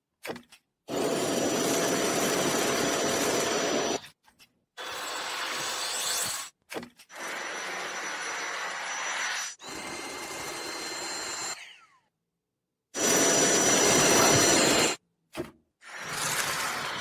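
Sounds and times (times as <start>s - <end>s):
vacuum cleaner motor whining: 0.9s - 4.0s, 13.0s - 15.0s.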